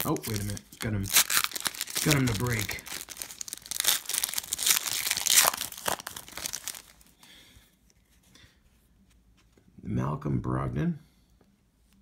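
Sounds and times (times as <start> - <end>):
foil wrapper crinkling and tearing: 0.0 - 7.1.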